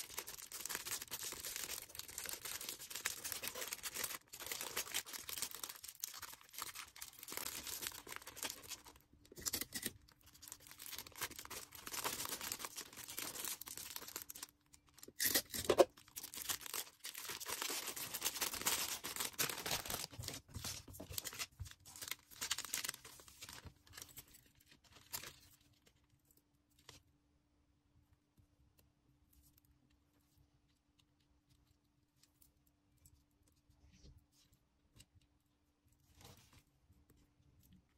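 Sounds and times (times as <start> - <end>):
packaging crinkling and tearing: 0.0 - 25.7.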